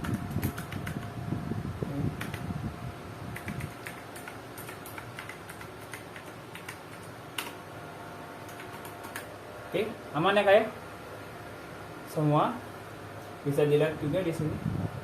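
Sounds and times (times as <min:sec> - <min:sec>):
mechanical keyboard clicks: 0:00.0 - 0:01.1, 0:02.2 - 0:02.5, 0:03.4 - 0:07.6, 0:08.5 - 0:09.3.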